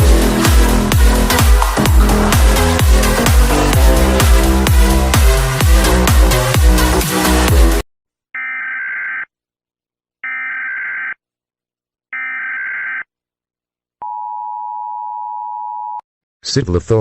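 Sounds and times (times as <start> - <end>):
electronic dance music: 0.0 - 7.8.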